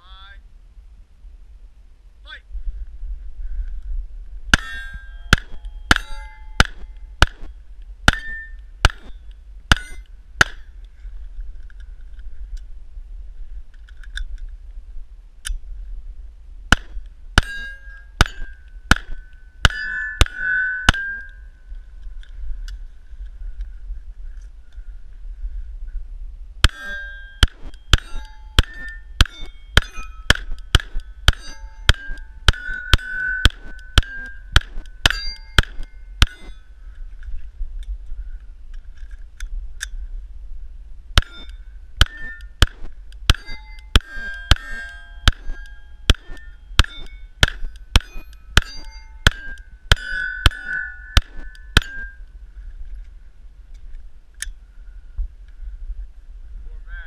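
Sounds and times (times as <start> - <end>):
steel plate ringing: 4.5 - 10.7, 16.7 - 22.1, 26.6 - 36.8, 41.2 - 52.3.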